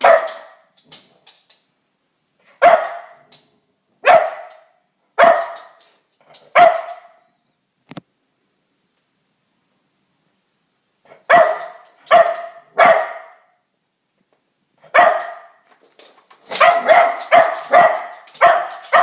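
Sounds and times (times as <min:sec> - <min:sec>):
dog barking: 0:00.0 - 0:00.7, 0:02.4 - 0:03.3, 0:04.0 - 0:05.8, 0:06.5 - 0:07.3, 0:11.1 - 0:13.6, 0:14.8 - 0:15.6, 0:16.5 - 0:19.0.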